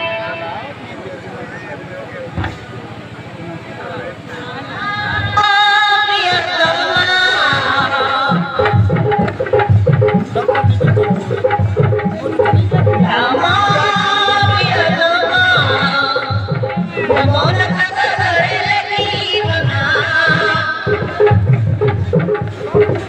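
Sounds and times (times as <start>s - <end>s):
regular drum beat: 6.6s - 23.0s
folk melody: 7.1s - 23.0s.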